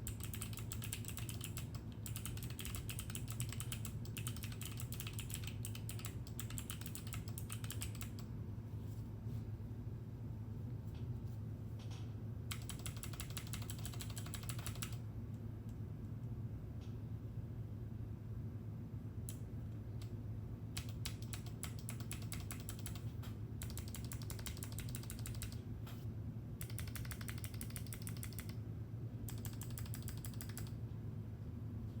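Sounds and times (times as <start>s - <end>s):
mechanical keyboard typing: 0.0s - 8.3s, 12.5s - 15.0s, 20.8s - 25.6s, 26.6s - 28.6s, 29.3s - 30.8s.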